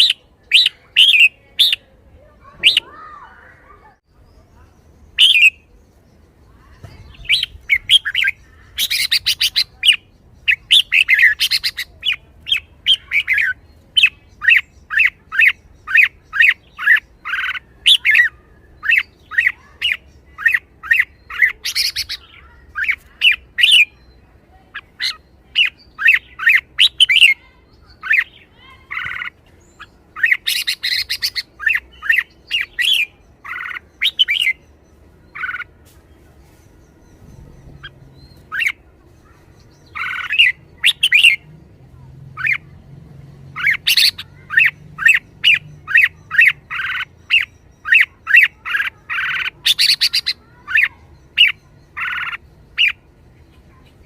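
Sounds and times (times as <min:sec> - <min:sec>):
bird chattering bursts: 0:05.1 - 0:05.7, 0:07.0 - 0:24.0, 0:24.7 - 0:35.7, 0:37.2 - 0:41.5, 0:43.6 - 0:53.0.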